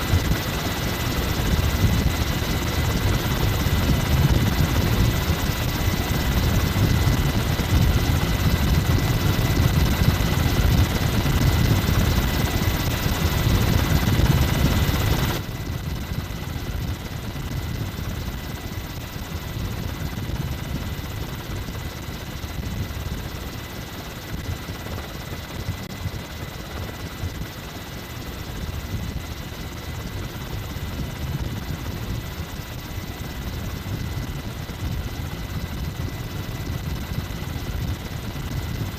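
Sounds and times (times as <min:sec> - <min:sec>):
helicopter rotor and engine: 0:00.0 - 0:38.9.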